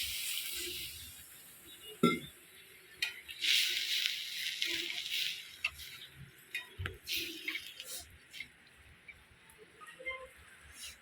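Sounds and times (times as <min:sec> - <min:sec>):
food sizzling in oil: 0:00.0 - 0:01.8, 0:02.5 - 0:08.9.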